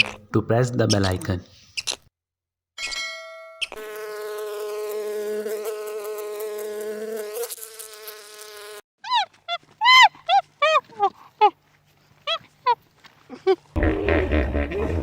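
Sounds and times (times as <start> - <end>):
short high squeaky calls: 0.0 - 2.0.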